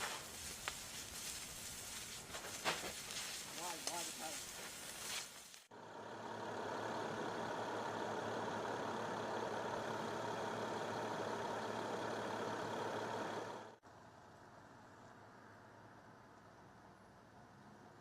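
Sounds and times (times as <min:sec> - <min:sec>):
engine idling: 0:05.7 - 0:15.8.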